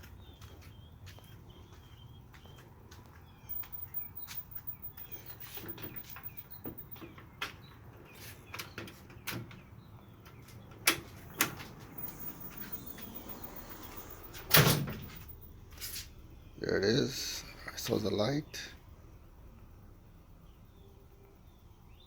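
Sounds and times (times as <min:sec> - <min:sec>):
birds chirping: 0:00.0 - 0:15.6.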